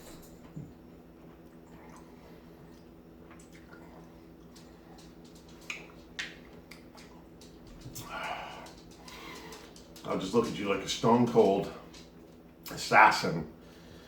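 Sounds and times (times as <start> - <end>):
steady low hum: 0.0 - 14.0
wet chewing sounds: 1.2 - 10.2.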